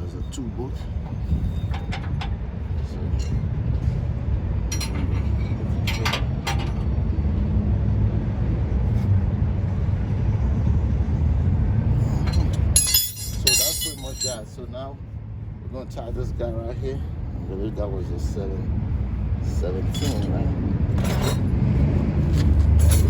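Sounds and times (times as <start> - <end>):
steady low rumble: 0.0 - 23.0
hand tools clinking: 1.1 - 3.5, 4.7 - 6.8, 12.1 - 14.6, 19.8 - 20.4, 21.0 - 21.5, 22.8 - 23.0.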